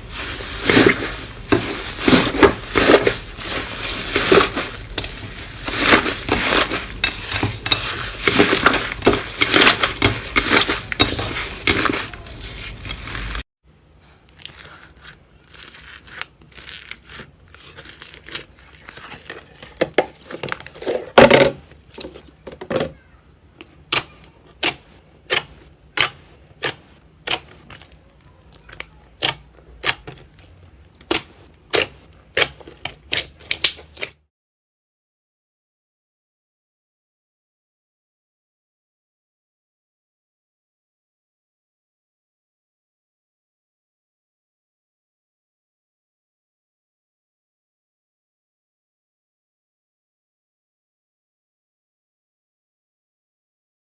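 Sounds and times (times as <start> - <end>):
slime squishing: 0.0 - 13.4, 14.2 - 21.1, 23.6 - 34.2
slime crackling and popping: 31.0 - 34.1.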